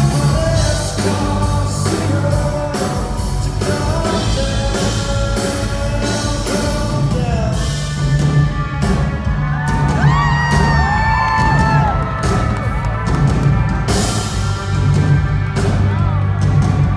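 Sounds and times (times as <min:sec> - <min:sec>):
live band with singing: 0:00.0 - 0:16.9
fans screaming and whooping: 0:08.6 - 0:16.9.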